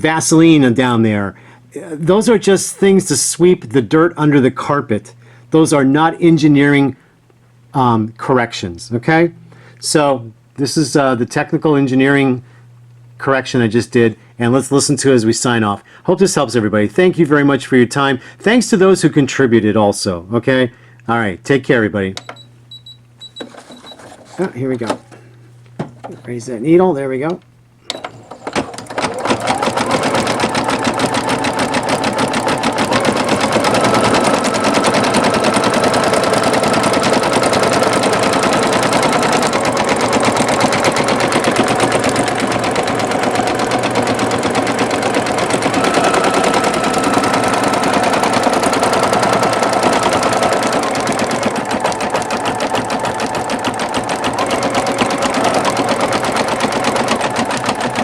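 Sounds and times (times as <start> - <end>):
sewing machine stitching: 23.3 - 24.5, 27.9 - 58.0.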